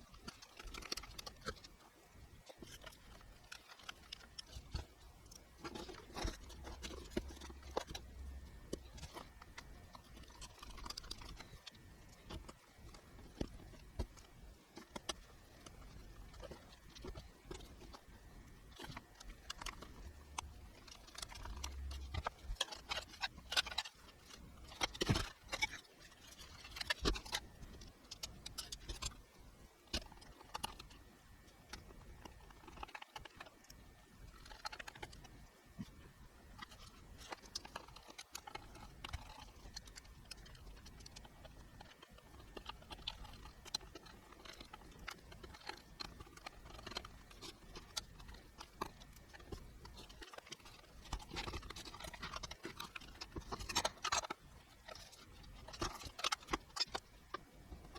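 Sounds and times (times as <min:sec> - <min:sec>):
low steady hum: 0:01.0 - 0:32.4.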